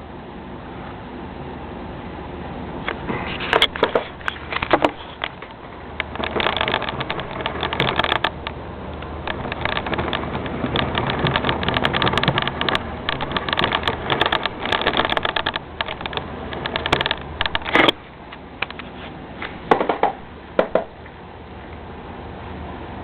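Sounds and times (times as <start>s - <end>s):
turntable bearing rattling and clicking: 3.4s - 18.9s
louder knock: 19.7s - 20.9s.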